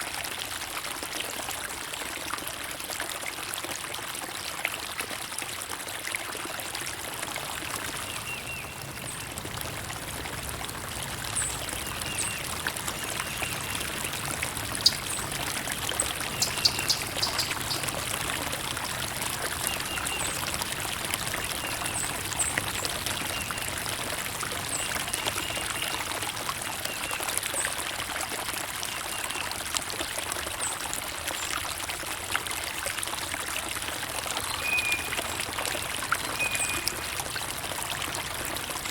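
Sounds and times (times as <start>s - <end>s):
water trickling and pouring: 0.0s - 38.9s
high bird chirps: 16.3s - 17.8s.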